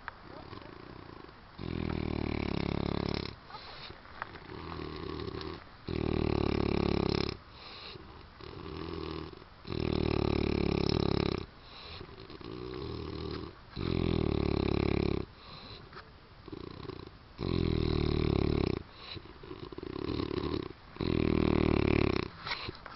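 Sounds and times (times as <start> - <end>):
quiet breaths: 0.0 - 22.9
man snoring heavily: 0.4 - 3.4, 4.5 - 15.7, 16.5 - 22.3.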